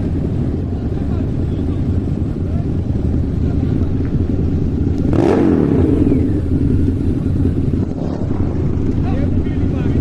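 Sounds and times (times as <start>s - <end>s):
motorcycle engine revving: 3.0s - 10.0s.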